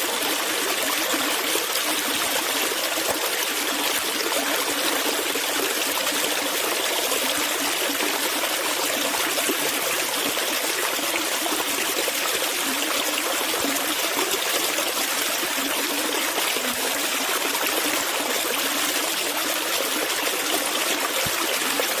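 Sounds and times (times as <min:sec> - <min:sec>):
stream water flowing: 0:00.0 - 0:22.0.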